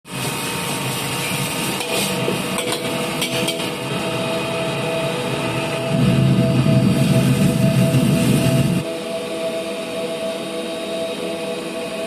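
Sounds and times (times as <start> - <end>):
gas burner roaring: 0.1 - 12.0.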